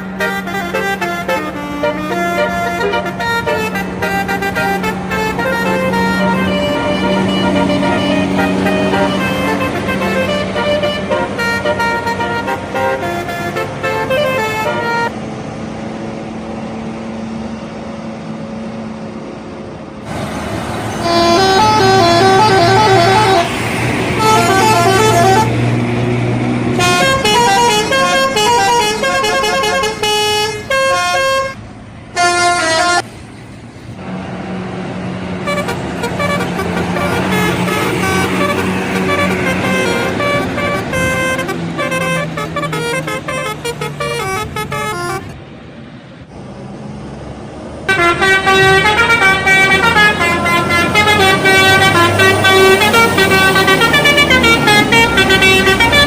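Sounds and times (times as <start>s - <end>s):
bus horns playing quick tunes: 0.0s - 15.1s, 20.9s - 25.9s, 26.7s - 31.6s, 32.2s - 33.1s, 35.4s - 45.4s, 47.9s - 56.0s
bus engine running: 0.0s - 56.0s.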